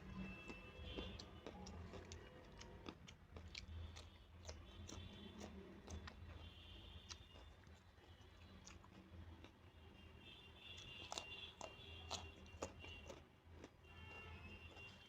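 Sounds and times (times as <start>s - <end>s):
person chewing food: 0.0s - 9.7s, 10.7s - 15.0s
wet mouth clicks: 1.0s - 6.4s, 11.0s - 13.3s.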